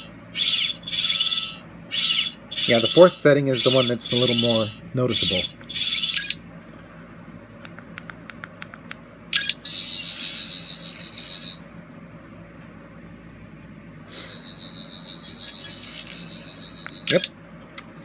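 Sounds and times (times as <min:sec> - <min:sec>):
high pulsing electronic tone: 0:00.4 - 0:06.4
quick clicks: 0:07.6 - 0:09.0.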